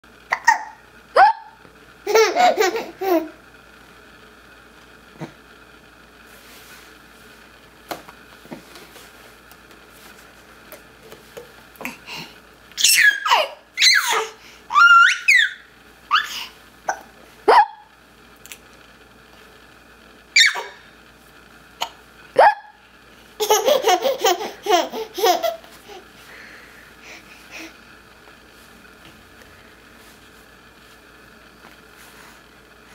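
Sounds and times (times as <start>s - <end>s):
girl laughing: 2.1s - 3.4s.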